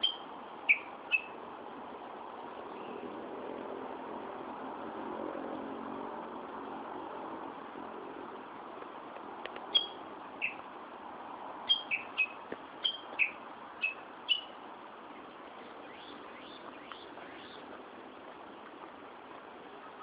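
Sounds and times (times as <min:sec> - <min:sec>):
songbird chirping: 0:00.0 - 0:01.4, 0:09.6 - 0:10.7, 0:11.6 - 0:20.0
distant city traffic hum: 0:00.0 - 0:20.0.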